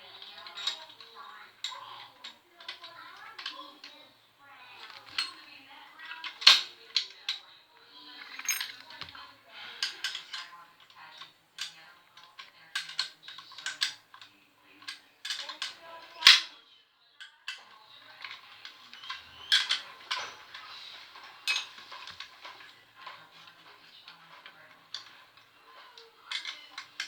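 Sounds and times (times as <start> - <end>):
hand tools clicking and clinking: 0.4 - 1.0, 4.9 - 5.4, 8.2 - 9.2, 19.0 - 27.0.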